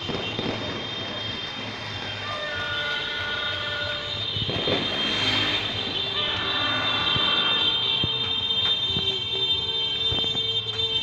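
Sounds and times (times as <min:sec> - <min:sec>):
distant firecracker pops: 0:04.2 - 0:06.2.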